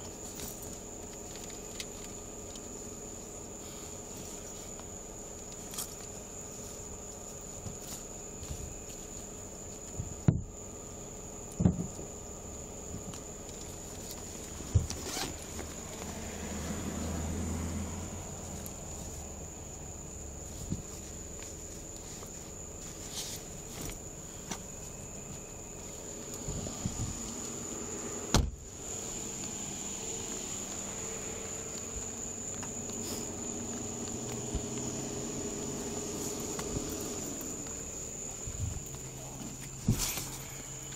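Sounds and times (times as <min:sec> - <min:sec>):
rustling and handling: 0:00.0 - 0:10.2, 0:12.8 - 0:16.2, 0:20.4 - 0:26.6.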